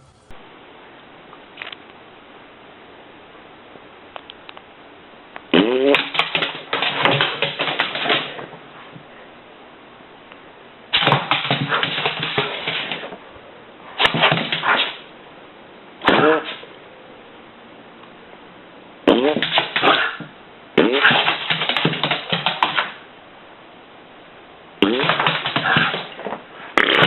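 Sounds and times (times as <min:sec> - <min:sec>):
dog crying and crackling: 0:19.2 - 0:20.3, 0:25.0 - 0:26.2.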